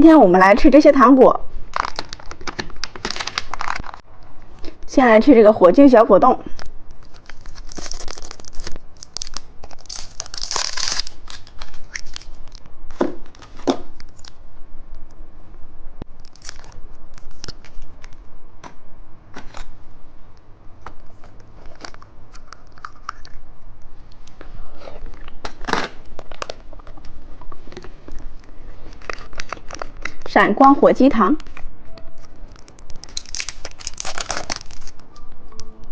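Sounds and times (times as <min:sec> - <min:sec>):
packaging clicks and crackles: 0:01.7 - 0:04.0, 0:06.6 - 0:12.6, 0:16.2 - 0:18.2, 0:25.1 - 0:30.4, 0:32.2 - 0:35.6
plastic wrapper crinkling: 0:01.7 - 0:04.0, 0:06.9 - 0:12.6, 0:16.2 - 0:18.2, 0:25.1 - 0:30.4, 0:32.2 - 0:35.2.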